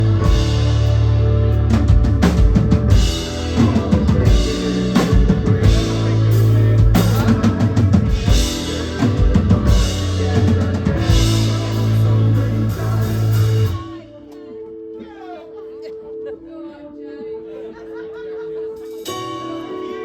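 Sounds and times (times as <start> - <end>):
drum kit: 0.0 - 14.0
sustained bass: 0.0 - 14.1
live band playing: 0.0 - 15.7.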